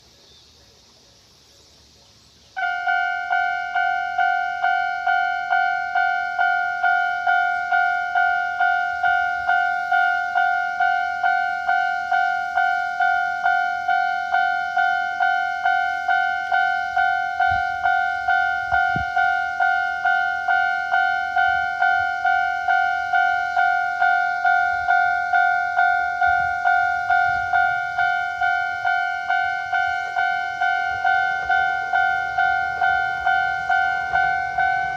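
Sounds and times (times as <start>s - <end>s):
level crossing alarm ringing: 2.6s - 34.9s.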